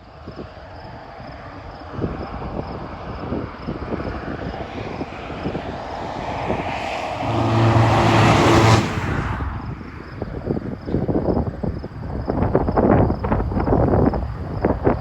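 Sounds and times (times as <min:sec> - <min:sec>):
wind buffeting microphone: 0:00.2 - 0:15.0
vehicle passing: 0:04.6 - 0:10.3, 0:13.2 - 0:15.0.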